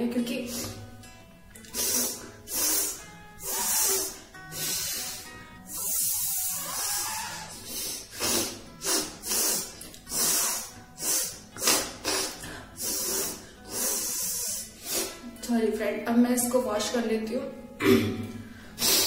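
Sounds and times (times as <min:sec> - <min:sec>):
person blowing nose: 0:01.6 - 0:15.3, 0:18.8 - 0:19.0.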